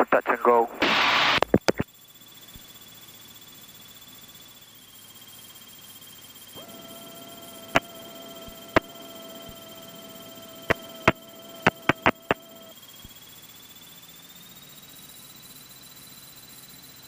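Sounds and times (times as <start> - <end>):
electrical whine and hum: 0.0 - 17.0
sharp clicks: 6.6 - 12.7.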